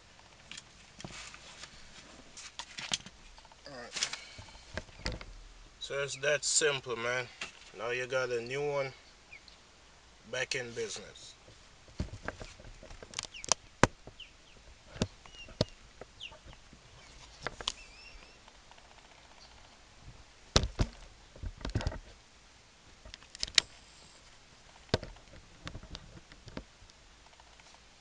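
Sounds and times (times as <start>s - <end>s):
faint bird chirps: 14.2s - 19.9s.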